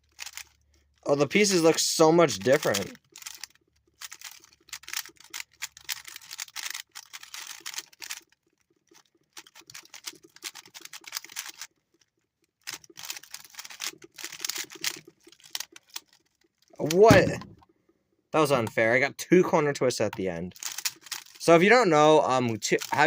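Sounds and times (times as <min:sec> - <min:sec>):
puzzle cube clicking: 0:01.4 - 0:08.3, 0:09.0 - 0:11.7, 0:12.6 - 0:16.1, 0:16.8 - 0:17.6, 0:20.2 - 0:23.0.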